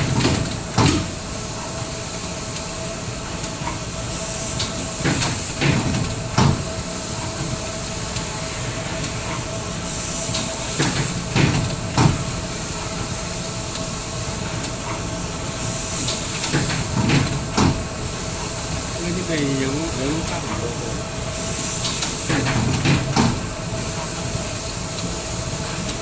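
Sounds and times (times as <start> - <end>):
machine hiss: 0.0 - 26.0
welding machine running: 0.0 - 26.0
machine clunks: 10.8 - 12.3.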